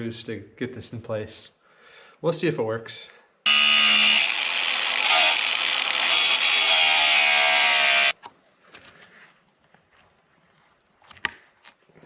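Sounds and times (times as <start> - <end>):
power tool cutting metal: 3.5 - 8.2.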